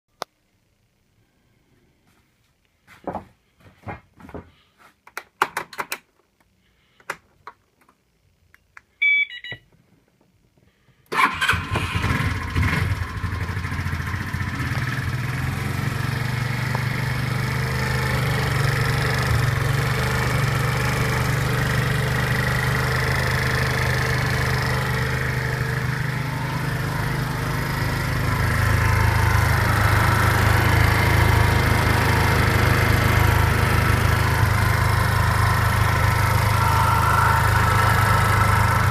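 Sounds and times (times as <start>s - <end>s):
short beep: 9.0s - 9.7s
scooter engine running: 11.2s - 38.9s.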